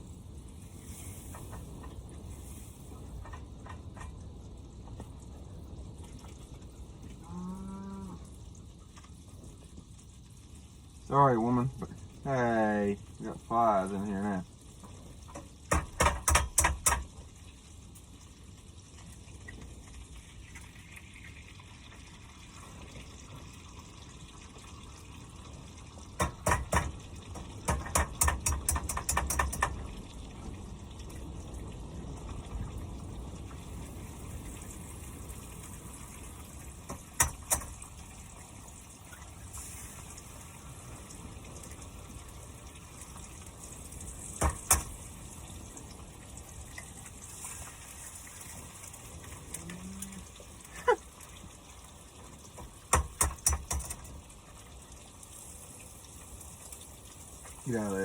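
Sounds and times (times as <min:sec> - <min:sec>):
butter sizzling in a frying pan: 0:00.0 - 0:58.0
sharp taps and clicks: 0:15.3 - 0:17.1, 0:26.2 - 0:29.8, 0:36.9 - 0:37.8, 0:44.4 - 0:45.0, 0:52.9 - 0:54.2.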